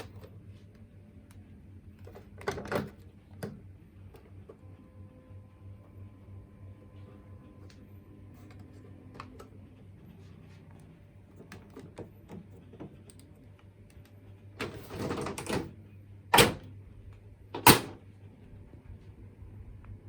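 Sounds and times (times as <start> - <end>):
low steady hum: 0.0 - 20.0.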